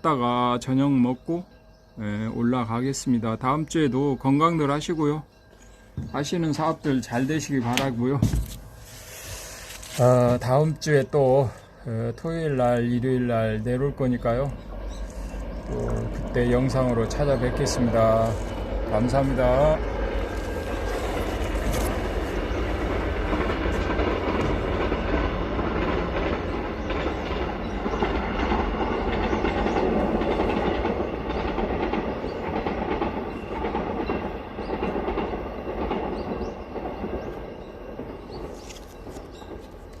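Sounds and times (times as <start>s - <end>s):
rattling vehicle rumble: 11.5s - 40.0s.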